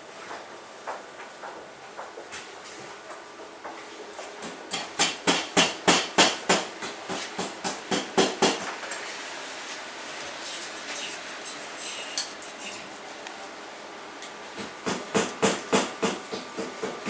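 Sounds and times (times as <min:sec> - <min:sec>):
hammer strikes: 0:14.6 - 0:17.0.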